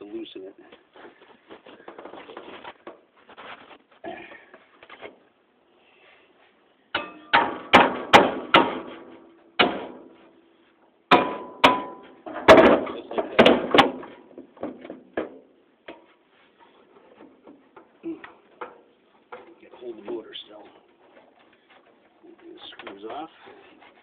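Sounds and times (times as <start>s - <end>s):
hammer striking metal: 7.0s - 10.1s, 11.1s - 12.2s.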